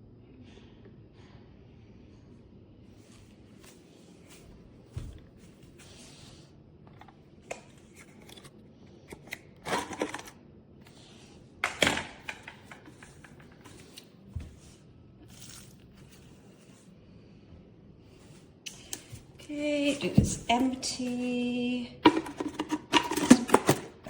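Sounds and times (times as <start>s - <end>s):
plastic tank clicks and clatter: 22.0s - 24.0s.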